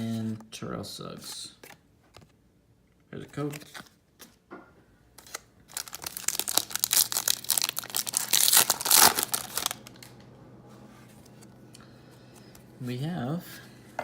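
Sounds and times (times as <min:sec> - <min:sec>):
wrapper tearing and crinkling: 0:05.2 - 0:10.1.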